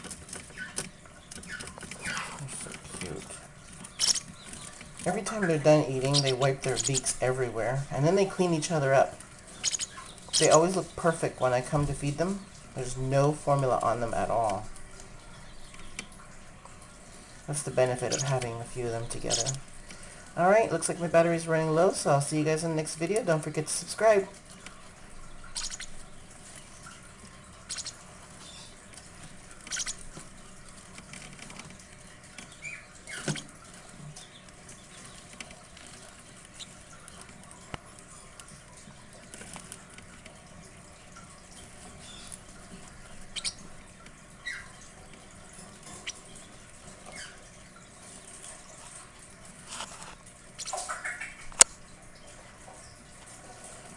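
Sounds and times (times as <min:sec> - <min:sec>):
faint bird squeaks: 0:04.0 - 0:04.3, 0:09.6 - 0:10.6, 0:25.6 - 0:25.9, 0:27.7 - 0:28.7, 0:29.7 - 0:30.0, 0:43.4 - 0:43.6.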